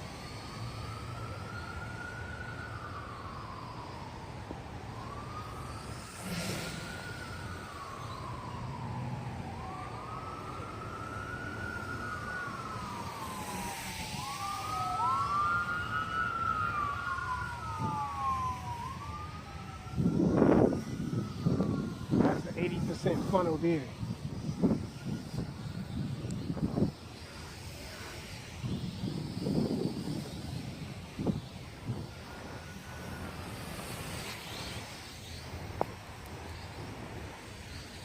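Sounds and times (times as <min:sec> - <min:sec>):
emergency siren wailing: 0:00.0 - 0:38.0
wind buffeting microphone: 0:06.8 - 0:34.8.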